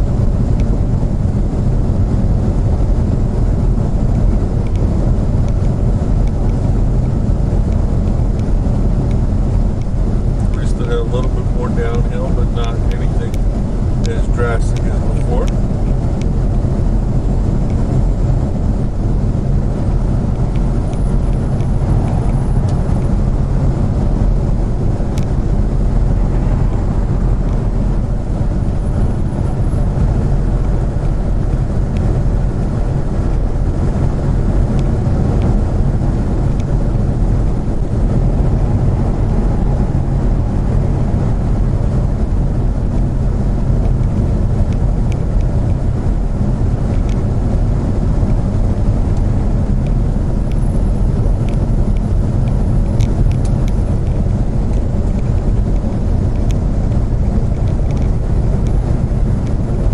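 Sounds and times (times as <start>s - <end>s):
car cabin road noise: 0.0s - 59.9s.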